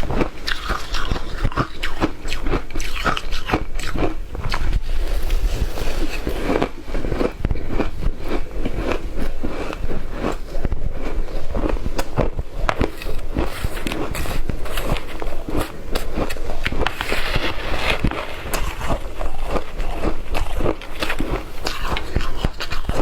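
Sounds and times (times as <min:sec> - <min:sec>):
ice being chewed: 0:00.0 - 0:23.0.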